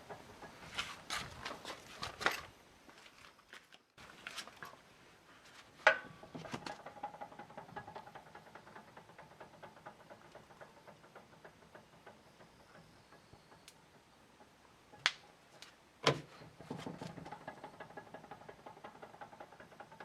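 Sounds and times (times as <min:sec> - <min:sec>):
wheel rapid ticking: 0:06.0 - 0:15.5, 0:16.4 - 0:20.0.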